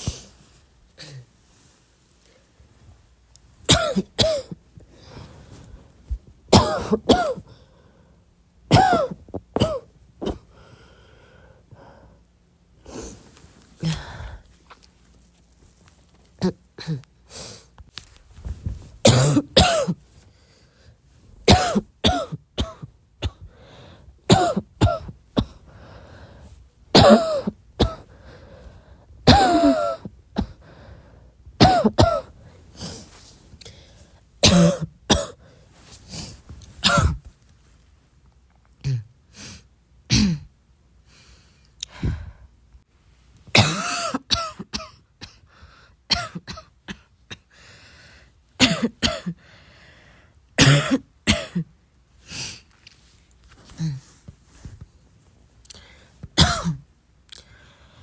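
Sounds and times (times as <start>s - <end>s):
person coughing: 3.7s - 4.6s, 6.5s - 7.5s, 8.7s - 10.5s, 16.4s - 17.1s, 19.0s - 20.0s, 21.5s - 23.5s, 24.3s - 25.6s, 27.0s - 28.1s, 29.3s - 30.6s, 31.6s - 32.4s, 34.4s - 35.4s, 36.8s - 37.3s, 40.1s - 40.5s, 43.5s - 45.4s, 46.1s - 47.5s, 48.6s - 49.4s, 50.6s - 51.7s, 56.4s - 56.8s.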